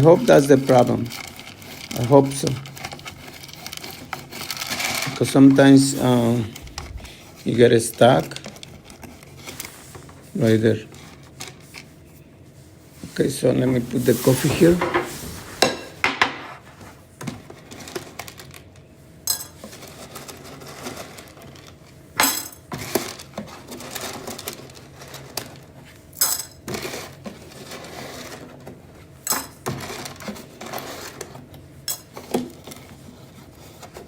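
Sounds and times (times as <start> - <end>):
scraping and rubbing: 0.0 - 17.0.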